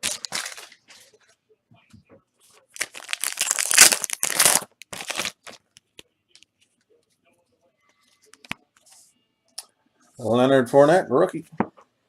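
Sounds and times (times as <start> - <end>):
foil wrapper tearing and crinkling: 0.0 - 0.8, 2.8 - 5.6.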